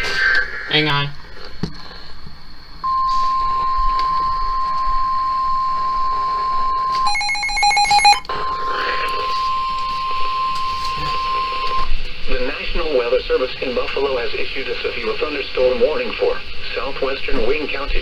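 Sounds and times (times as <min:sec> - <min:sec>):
steady warning alarm tone: 0:02.8 - 0:11.9
rapid harsh electronic beeping: 0:06.1 - 0:11.8.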